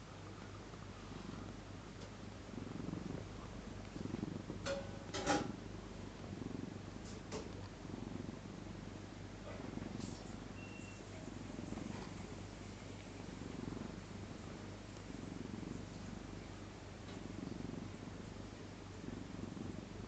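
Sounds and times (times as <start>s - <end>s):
cat snoring: 0.0s - 20.0s.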